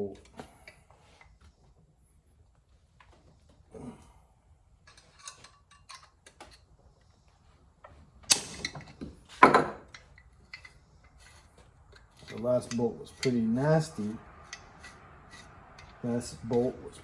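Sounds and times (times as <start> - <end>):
hand tool clicking and scraping: 4.8 - 7.2, 8.3 - 17.0.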